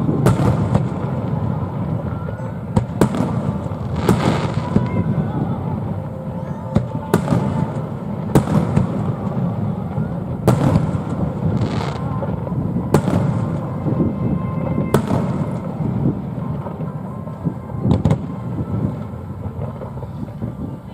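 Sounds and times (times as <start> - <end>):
fireworks bangs: 0.0 - 20.9
fireworks crackling hiss: 0.0 - 20.9.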